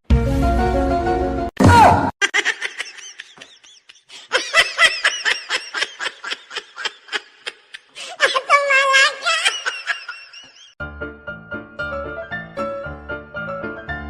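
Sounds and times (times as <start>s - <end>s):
person laughing: 2.2s - 10.8s.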